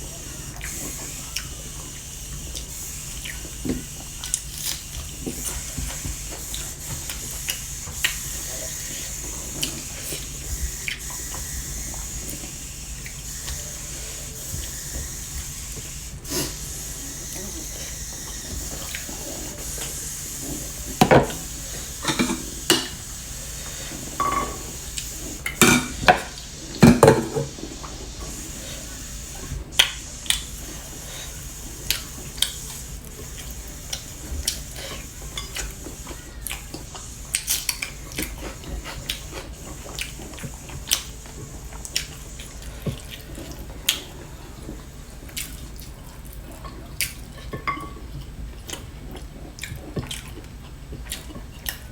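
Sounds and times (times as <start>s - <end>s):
utensils clinking on plate: 22.0s - 23.0s, 24.2s - 24.7s, 25.6s - 27.5s, 47.4s - 48.0s.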